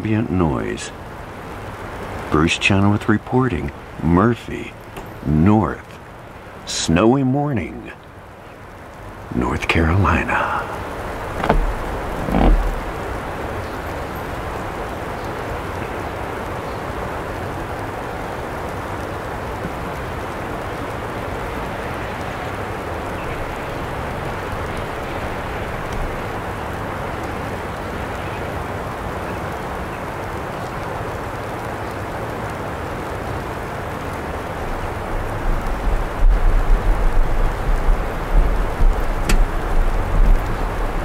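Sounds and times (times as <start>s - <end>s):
wind buffeting microphone: 10.8s - 14.8s, 34.9s - 41.0s.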